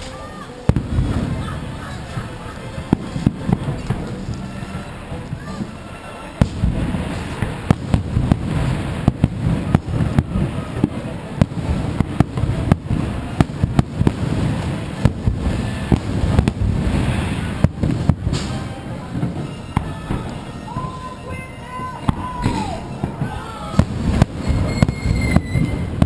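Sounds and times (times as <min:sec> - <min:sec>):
rumble of echoing explosions: 0:00.0 - 0:26.0
firework shells bursting: 0:06.4 - 0:20.6, 0:22.1 - 0:26.0.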